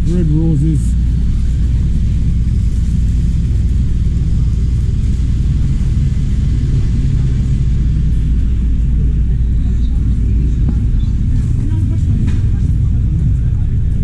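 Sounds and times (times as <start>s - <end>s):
low outdoor street rumble: 0.0s - 14.0s.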